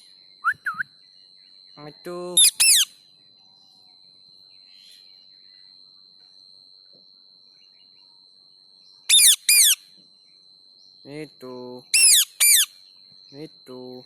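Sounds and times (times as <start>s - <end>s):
parrot calling: 2.4s - 2.9s, 9.1s - 9.8s, 11.9s - 12.7s.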